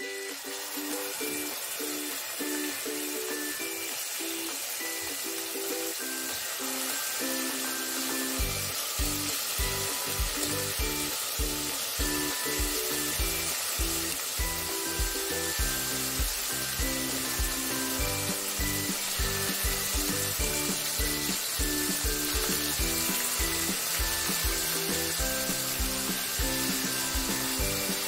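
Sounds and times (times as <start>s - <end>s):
chicken sizzling in a pan: 0.0s - 28.0s
music with plucked notes: 0.0s - 28.0s
low regular beat: 8.4s - 14.0s, 15.0s - 28.0s.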